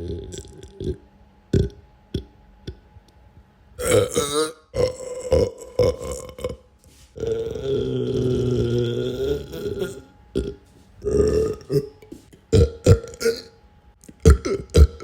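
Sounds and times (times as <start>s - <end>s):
person belching: 0.0s - 2.8s, 3.8s - 15.0s.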